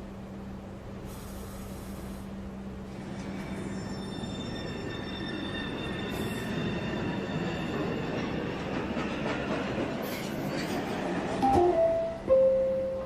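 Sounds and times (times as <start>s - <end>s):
rumble of train cars: 0.0s - 13.0s
high squealing train wheels: 2.8s - 11.9s.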